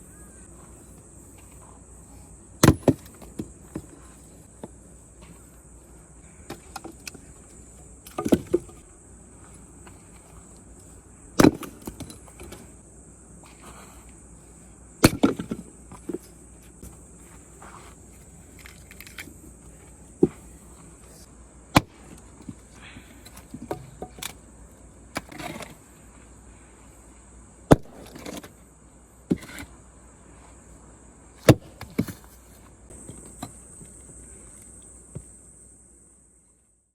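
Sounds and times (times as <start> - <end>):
insect chirring: 0.0 - 27.7, 32.9 - 36.9
axe splitting firewood: 2.6 - 4.0, 6.4 - 8.8, 11.3 - 12.7, 15.0 - 17.0, 21.7 - 24.4, 25.1 - 25.8, 27.7 - 28.5, 29.3 - 29.7, 31.4 - 32.3.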